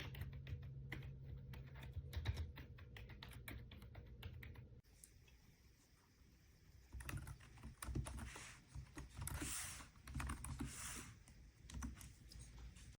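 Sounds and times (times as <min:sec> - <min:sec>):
keyboard typing: 0:00.0 - 0:04.8, 0:06.9 - 0:10.8, 0:11.6 - 0:12.2.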